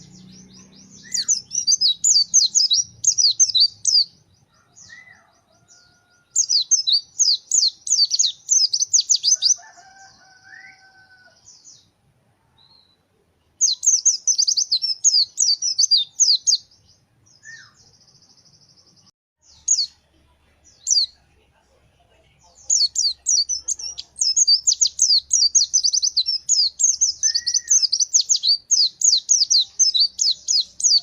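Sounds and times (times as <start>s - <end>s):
bird singing high sweeping chirps: 0.0s - 4.2s, 6.4s - 9.6s, 13.6s - 18.4s, 22.7s - 31.0s.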